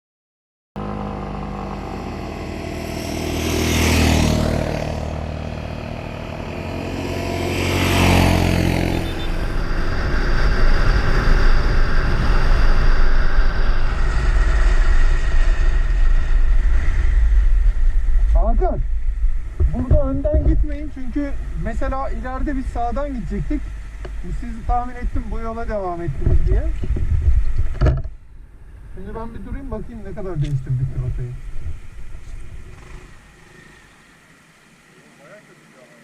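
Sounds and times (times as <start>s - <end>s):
motorcycle engine rumbling: 0.8s - 35.2s
wind noise: 7.0s - 33.2s.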